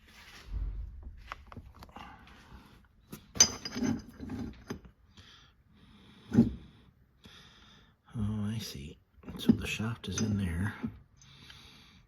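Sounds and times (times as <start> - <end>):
metal parts clinking and knocking: 3.3 - 4.9, 9.3 - 10.9.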